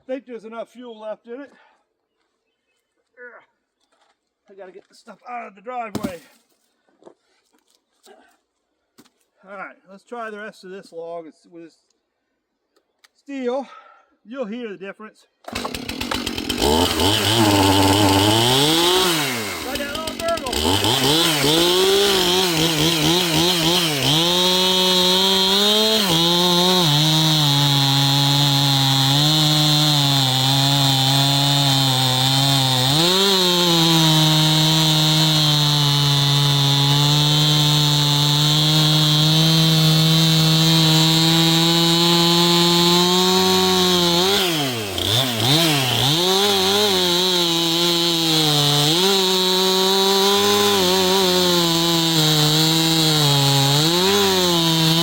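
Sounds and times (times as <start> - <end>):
chainsaw cutting through log: 15.5 - 55.0.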